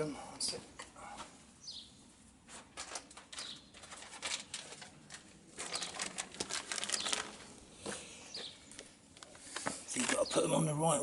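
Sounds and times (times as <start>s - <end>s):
bird chirping: 1.6s - 2.0s, 3.4s - 3.8s, 6.8s - 7.3s, 8.2s - 8.8s.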